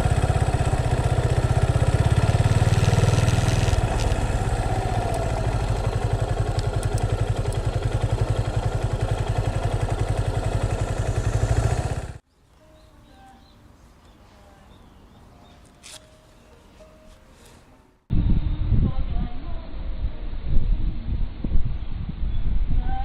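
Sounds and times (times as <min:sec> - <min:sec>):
motorcycle engine idling: 0:00.0 - 0:12.2.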